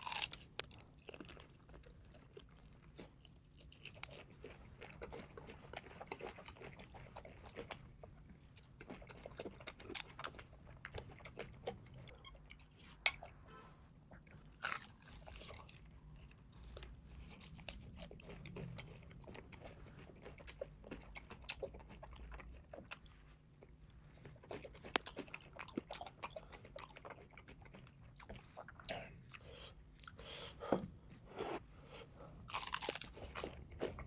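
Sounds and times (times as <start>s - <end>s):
crunchy bites and fast chewing: 0.0s - 7.9s, 14.5s - 28.7s, 32.5s - 34.0s.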